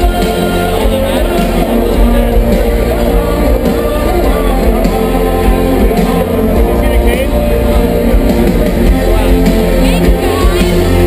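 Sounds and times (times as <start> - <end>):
live rock band music: 0.0 - 11.0
voices: 0.0 - 11.0.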